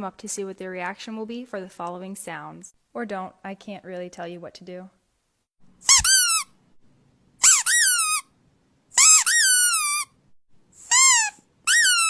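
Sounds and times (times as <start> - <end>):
squeaky dog toy squeaking: 5.8 - 6.6, 7.4 - 8.3, 8.9 - 10.2, 10.8 - 12.0.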